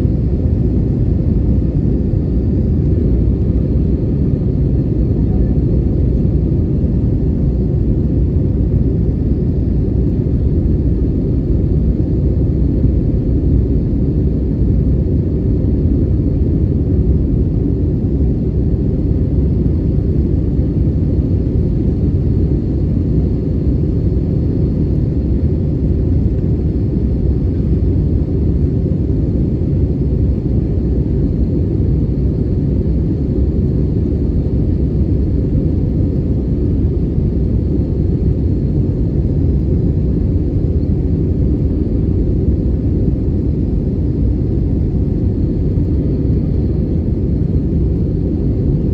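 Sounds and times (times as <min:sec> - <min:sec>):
airplane cabin drone: 0:00.0 - 0:48.9.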